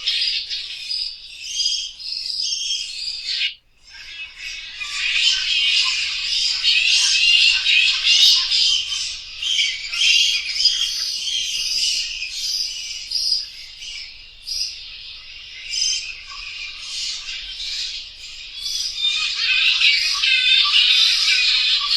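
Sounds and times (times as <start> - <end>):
bats squeaking: 4.1 - 13.5.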